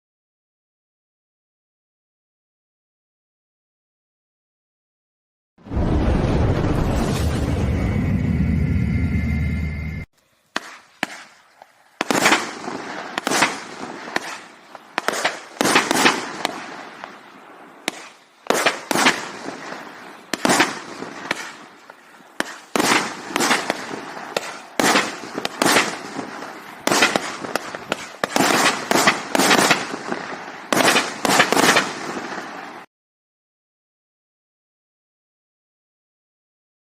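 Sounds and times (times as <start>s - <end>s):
firework bangs with echo: 10.6s - 11.4s, 12.0s - 32.9s.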